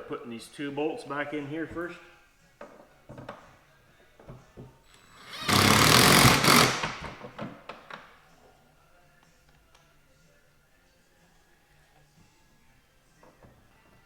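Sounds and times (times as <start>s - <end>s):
power driver running bolt: 5.2s - 7.2s.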